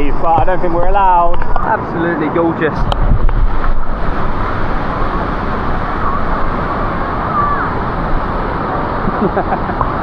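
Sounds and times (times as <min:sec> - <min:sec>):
waterfall rushing: 0:03.4 - 0:10.0.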